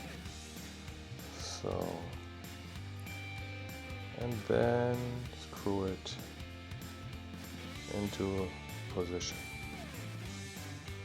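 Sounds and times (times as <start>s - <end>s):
background music sustained notes: 0.0s - 11.0s.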